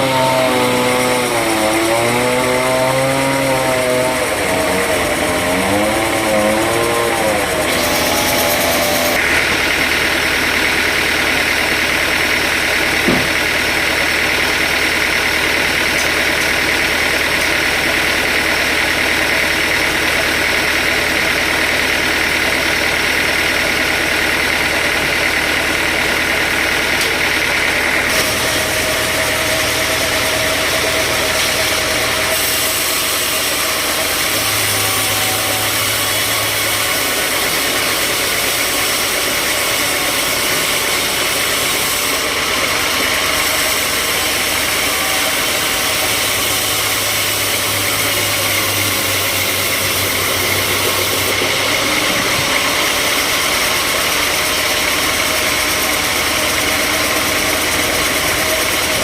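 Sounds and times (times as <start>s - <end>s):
saw hissing: 0.0s - 10.9s, 28.0s - 59.0s
sawmill engine running: 0.0s - 59.0s.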